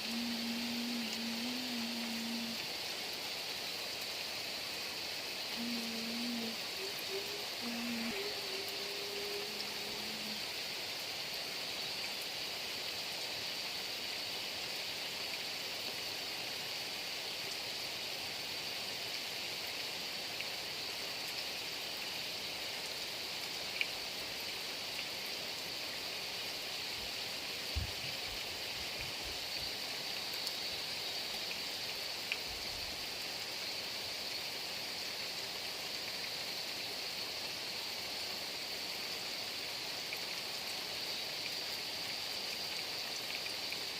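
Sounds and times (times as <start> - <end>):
heavy rain falling: 0.0 - 19.0.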